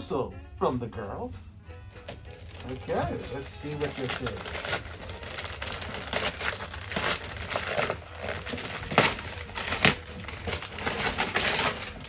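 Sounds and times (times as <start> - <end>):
wrapping paper crinkling: 1.9 - 12.0
sharp paper rips: 2.4 - 12.0.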